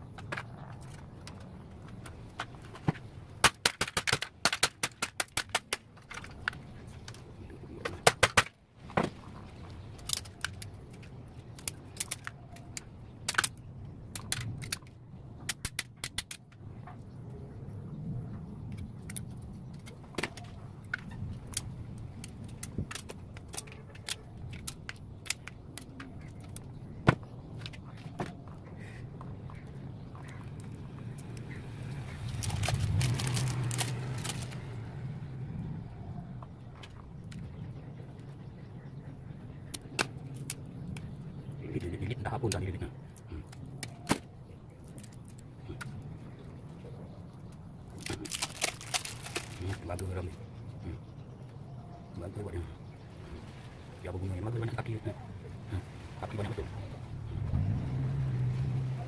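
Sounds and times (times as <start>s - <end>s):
clicks and clatter of small parts: 0.1s - 8.6s, 9.9s - 16.7s, 18.7s - 26.7s, 32.3s - 34.7s, 47.9s - 49.9s.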